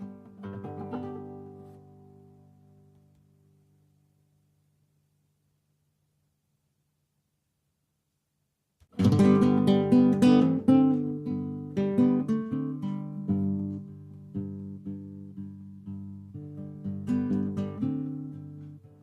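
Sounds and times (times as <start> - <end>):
acoustic guitar music: 0.0 - 3.6, 9.0 - 19.0.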